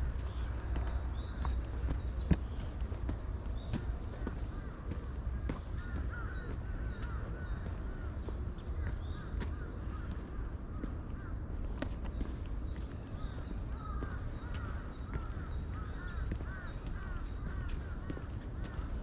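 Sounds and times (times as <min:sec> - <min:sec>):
wild birds calling: 0:00.0 - 0:19.0.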